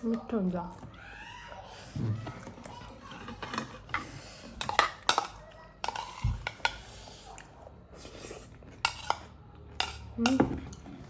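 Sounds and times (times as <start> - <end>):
spoon clinking and scraping dish: 3.1 - 6.9, 8.7 - 11.0.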